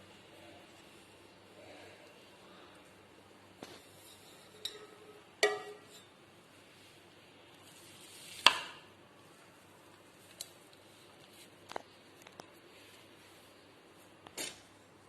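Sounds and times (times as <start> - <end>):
taps on metal cake pan: 5.4 - 5.9.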